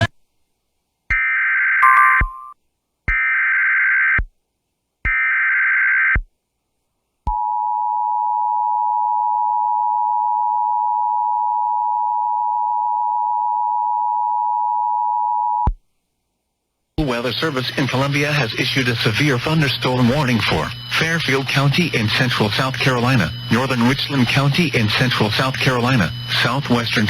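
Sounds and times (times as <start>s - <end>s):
screeching data bursts: 17.8s - 27.0s.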